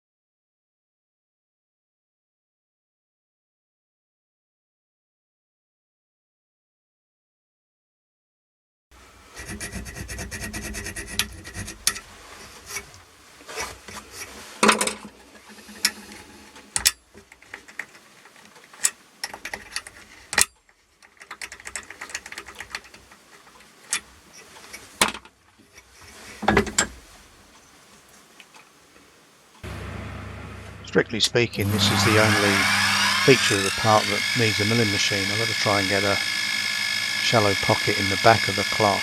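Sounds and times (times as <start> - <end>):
rubbing and scraping metal part: 9.3 - 27.2, 31.7 - 39.0.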